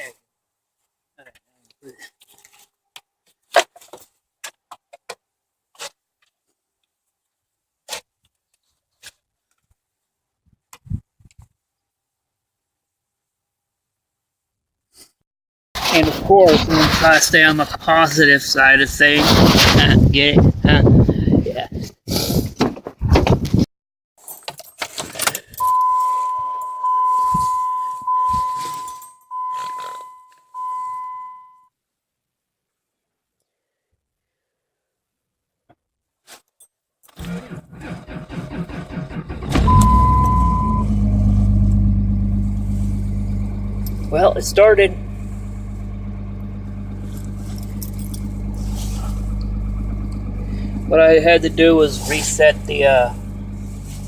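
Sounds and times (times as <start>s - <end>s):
dashboard warning chime: 25.6s - 31.7s, 39.6s - 41.0s
keys jangling: 47.0s - 48.3s.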